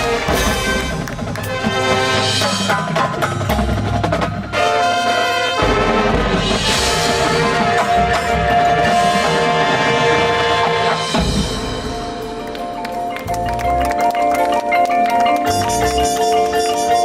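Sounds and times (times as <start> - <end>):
marching band playing: 0.0 - 17.0
low brass bass: 4.5 - 12.2, 15.5 - 17.0.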